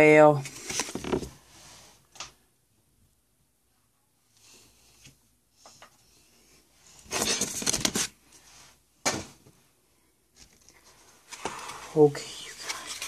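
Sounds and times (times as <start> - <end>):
cards and packaging rustling: 0.4 - 1.4, 7.0 - 8.2, 10.3 - 13.0.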